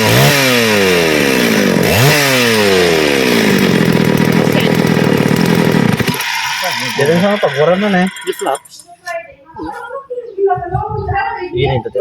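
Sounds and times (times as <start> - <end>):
chainsaw engine revving: 0.0 - 8.8.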